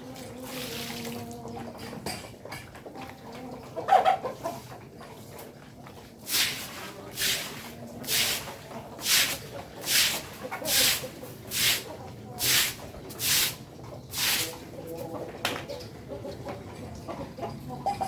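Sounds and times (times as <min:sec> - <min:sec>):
chickens clucking: 0:00.0 - 0:18.0
chicken squawk: 0:03.8 - 0:04.6.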